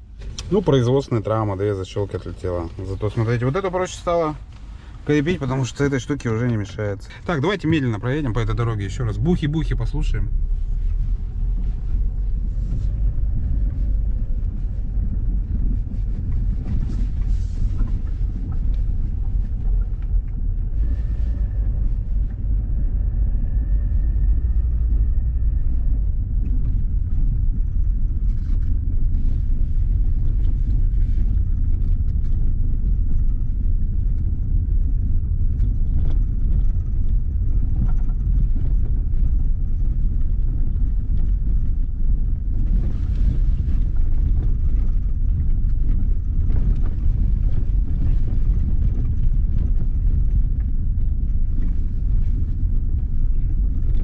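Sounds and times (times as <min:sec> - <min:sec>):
suspension clicks and rattles: 0:00.0 - 0:54.0
tyre and road rumble: 0:00.0 - 0:54.0.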